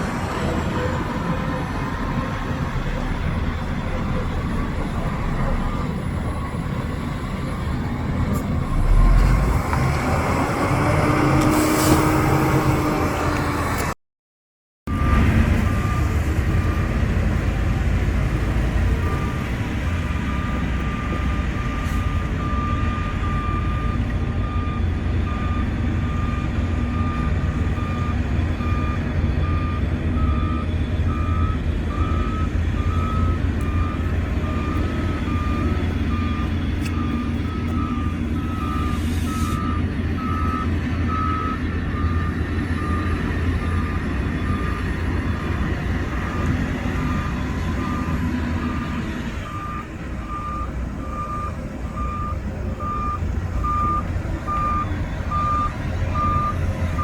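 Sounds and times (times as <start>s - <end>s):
reversing alarm beeping: 14.9s - 17.0s, 19.0s - 57.0s
diesel engine running: 14.9s - 57.0s.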